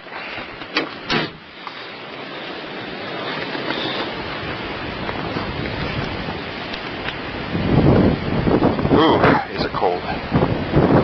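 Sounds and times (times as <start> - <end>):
wind rushing over microphone: 0.0 - 11.0
car door shutting: 0.7 - 1.5.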